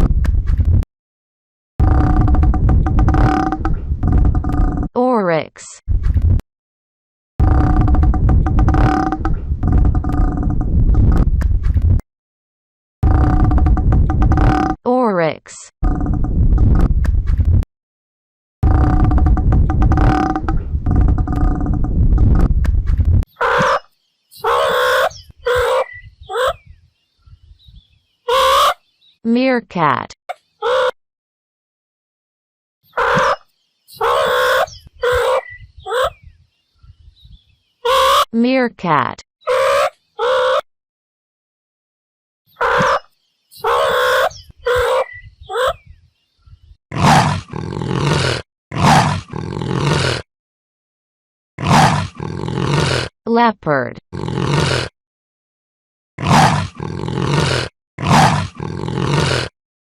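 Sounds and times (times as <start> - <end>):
meerkat rasping roar-like calls: 7.4 - 10.7, 23.4 - 26.6, 28.3 - 28.8, 32.9 - 33.4, 34.0 - 36.1, 37.8 - 38.3, 39.4 - 40.6, 42.5 - 45.8, 46.9 - 50.2, 51.6 - 53.1, 56.2 - 59.5
meerkat chirps and squeals: 23.3 - 26.7, 28.2 - 28.8, 32.8 - 36.3, 37.8 - 38.3, 39.4 - 40.6, 42.5 - 45.9
harsh caw-like animal calls: 32.9 - 36.1, 42.6 - 45.0.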